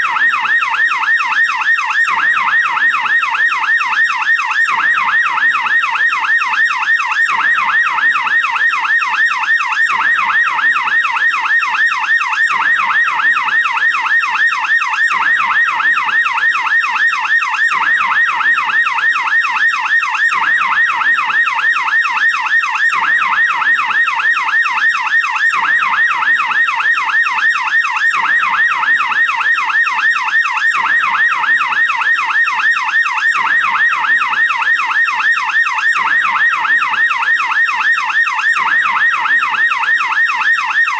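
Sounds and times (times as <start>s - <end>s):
police yelp siren: 0.0s - 40.9s.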